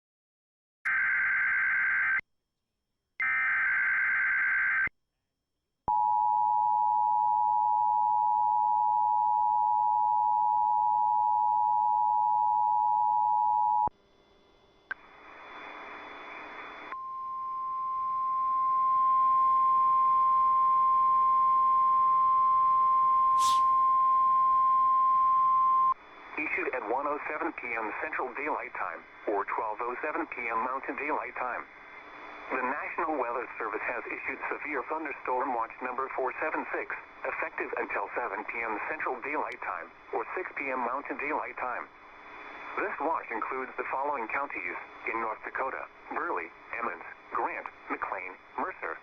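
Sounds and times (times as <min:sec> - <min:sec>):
hiss: 0:23.4 - 0:23.7
single-tone alert tone: 0:23.4 - 0:23.8.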